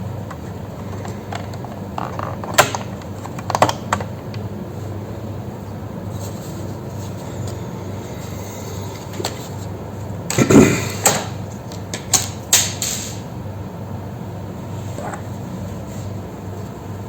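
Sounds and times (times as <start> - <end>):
laptop parts clicking and knocking: 0.9 - 4.4
steady low hum: 4.1 - 17.0.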